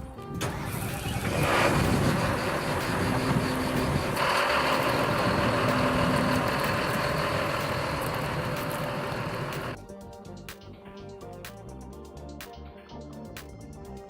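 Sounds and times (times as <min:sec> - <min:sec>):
diesel engine running: 0:00.4 - 0:09.8.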